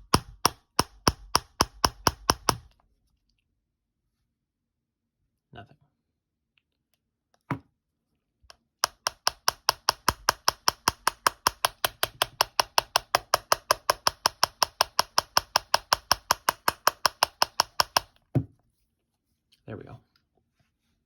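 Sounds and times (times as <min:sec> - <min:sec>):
rapid tapping on phone: 0:00.0 - 0:02.7, 0:08.8 - 0:18.2.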